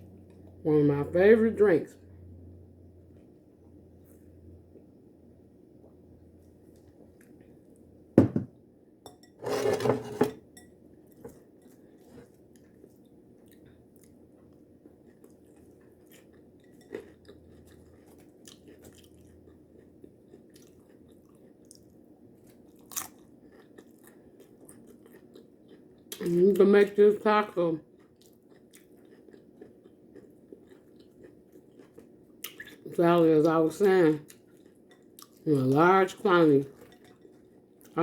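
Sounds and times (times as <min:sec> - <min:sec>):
person chewing: 0:11.1 - 0:26.4, 0:27.9 - 0:32.9, 0:34.2 - 0:35.8
tortilla chips crunching: 0:22.5 - 0:26.3.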